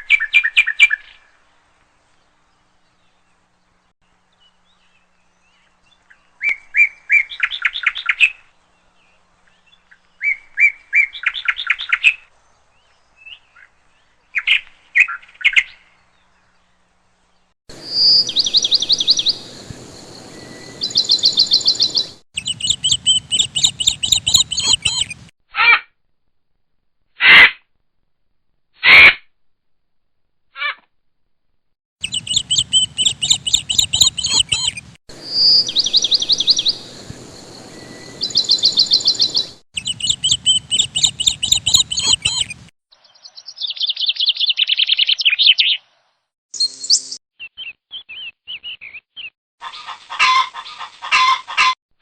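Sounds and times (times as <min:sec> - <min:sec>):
small birds chirping: 0:02.0 - 0:25.3, 0:32.0 - 0:49.4
loud bird calls: 0:17.7 - 0:25.3, 0:32.0 - 0:42.7.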